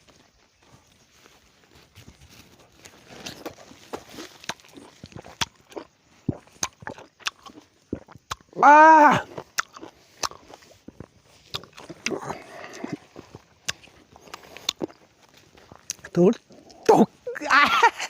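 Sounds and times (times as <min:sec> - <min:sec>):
person chewing a lime: 0:02.7 - 0:16.9.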